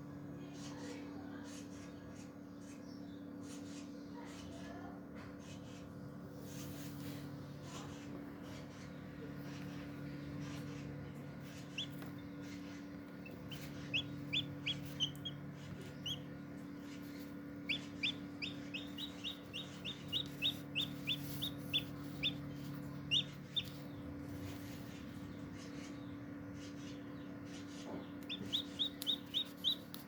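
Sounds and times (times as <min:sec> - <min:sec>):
low hum: 0:06.2 - 0:30.0
chick peeping: 0:09.3 - 0:26.0, 0:26.6 - 0:30.0.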